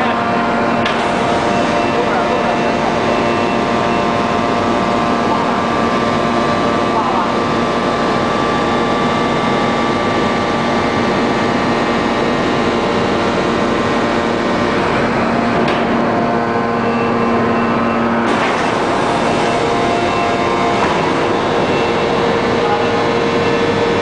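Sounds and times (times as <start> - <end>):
forging press machinery hum: 0.0 - 24.0.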